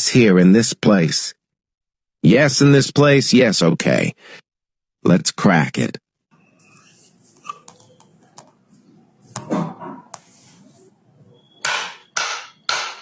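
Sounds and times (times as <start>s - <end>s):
sharp percussive hits: 11.6s - 13.0s.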